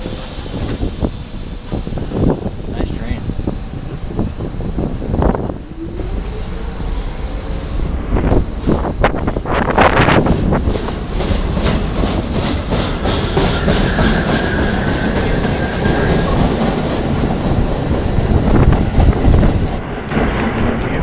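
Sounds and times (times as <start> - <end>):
train rumble: 0.0 - 21.0
train wheels clicking over rail joints: 8.3 - 20.9.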